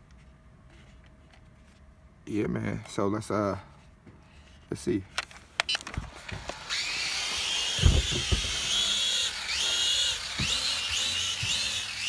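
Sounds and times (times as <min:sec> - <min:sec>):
toy drone motors whining: 0:05.8 - 0:12.0.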